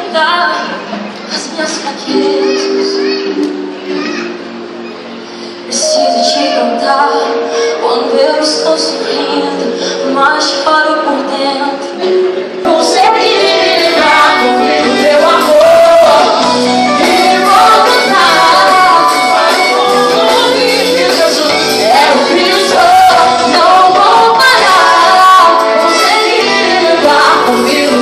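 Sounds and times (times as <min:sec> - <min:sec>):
backing band playing: 0:02.1 - 0:28.0
woman singing: 0:05.7 - 0:12.0, 0:12.7 - 0:28.0.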